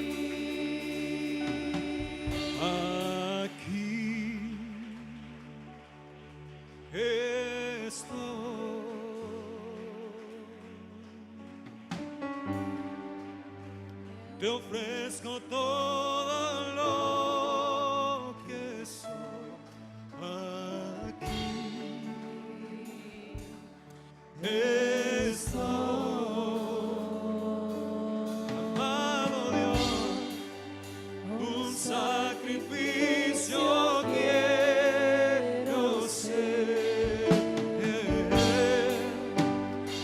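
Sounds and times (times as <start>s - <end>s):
instrumental accompaniment: 0.0s - 40.0s
person singing with vibrato: 24.4s - 40.0s.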